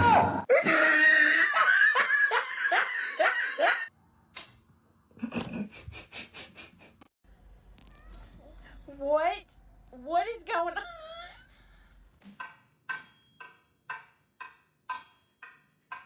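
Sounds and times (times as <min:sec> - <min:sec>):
person laughing hard: 0:00.5 - 0:03.9, 0:10.8 - 0:11.9.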